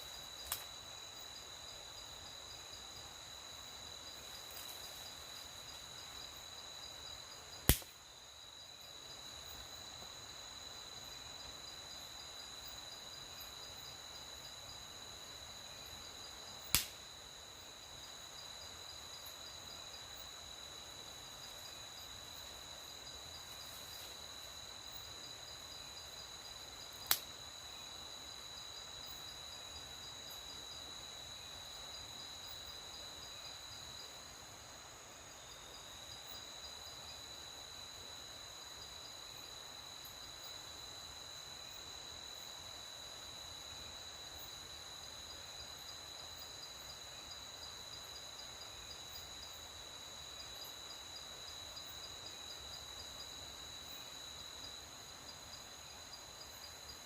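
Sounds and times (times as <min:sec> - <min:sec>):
crickets chirring: 0:00.0 - 0:57.0
sharp loud snaps: 0:00.4 - 0:00.7, 0:07.6 - 0:08.0, 0:16.7 - 0:17.0, 0:27.0 - 0:27.3.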